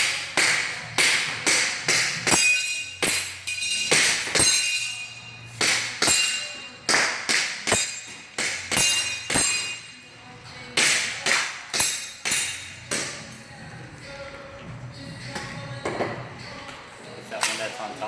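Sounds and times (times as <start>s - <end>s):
shots clanking on steel targets: 0.4s - 10.0s.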